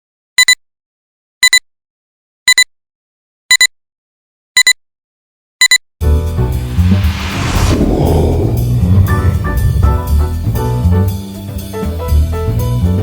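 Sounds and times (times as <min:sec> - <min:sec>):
music with drums and bass: 0:06.1 - 0:13.0.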